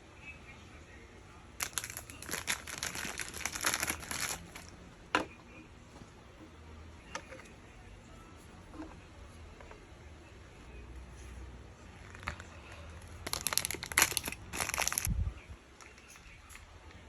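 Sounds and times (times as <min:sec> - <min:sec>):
packaging crinkling and tearing: 0:01.6 - 0:04.7, 0:13.2 - 0:15.1.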